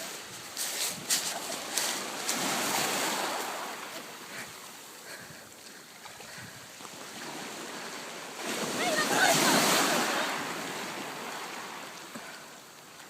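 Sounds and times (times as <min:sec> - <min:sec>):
surf breaking on a beach: 0:00.0 - 0:12.9
sharp water splashing: 0:08.4 - 0:10.8.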